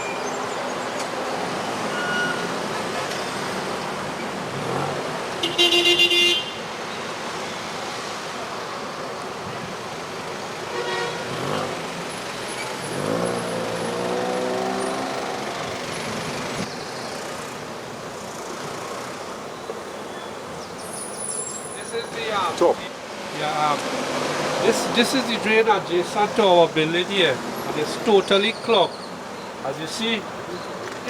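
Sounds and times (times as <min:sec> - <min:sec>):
road traffic: 0:00.0 - 0:31.0
car horn short toots: 0:05.4 - 0:06.6, 0:10.7 - 0:11.3
vehicle accelerating past: 0:12.5 - 0:16.5.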